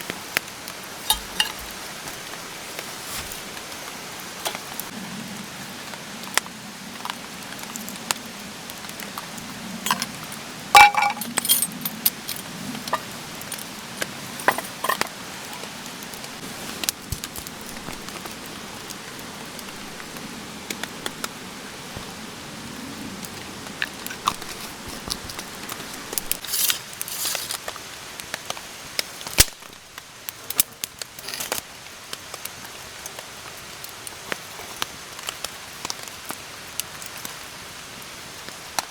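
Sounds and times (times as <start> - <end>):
steady rain falling: 0.0 - 38.9
camp gear clicking and clinking: 0.9 - 4.9, 9.8 - 22.1, 23.8 - 27.7.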